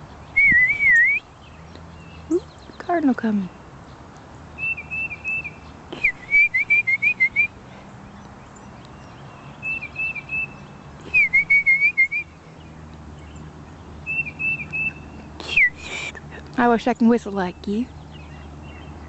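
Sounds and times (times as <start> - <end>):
cardinal whistling: 0.4 - 1.3, 4.6 - 7.6, 9.6 - 12.4, 14.0 - 15.8
person whistling bird calls: 0.4 - 1.3, 4.6 - 7.6, 9.6 - 12.3, 14.1 - 16.2.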